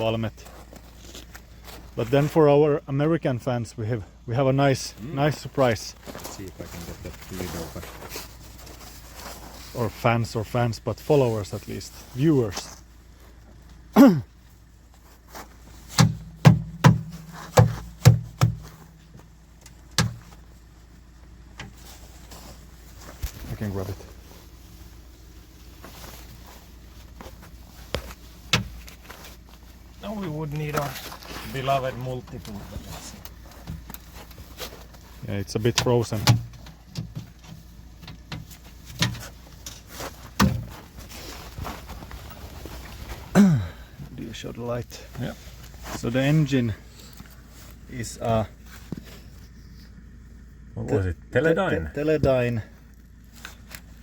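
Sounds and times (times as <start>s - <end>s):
metal knocks and scrapes: 15.9s - 19.2s.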